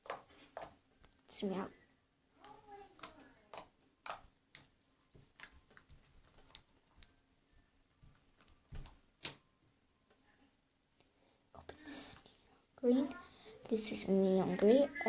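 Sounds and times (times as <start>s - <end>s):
small objects clicking and tapping: 0.0s - 1.2s, 2.4s - 7.1s.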